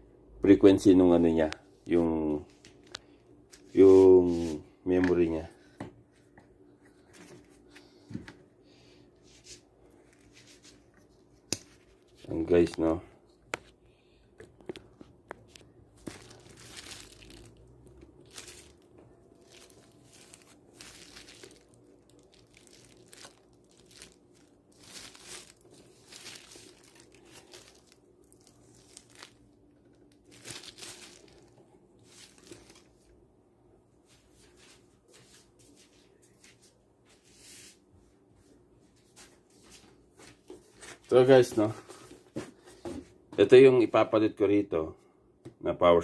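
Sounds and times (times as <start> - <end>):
packaging crinkling and tearing: 15.3 - 33.1.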